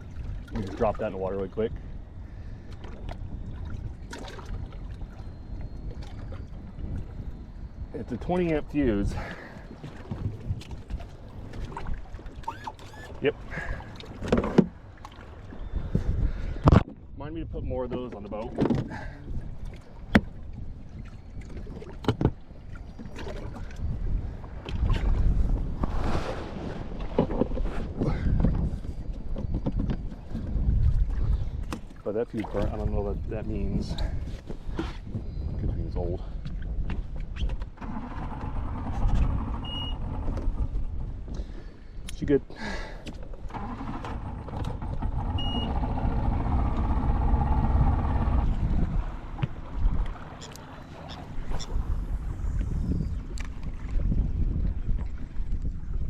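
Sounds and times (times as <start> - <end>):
wind rumble on microphone: 0.0 - 56.0
short high beep: 39.6 - 40.0, 45.4 - 45.8.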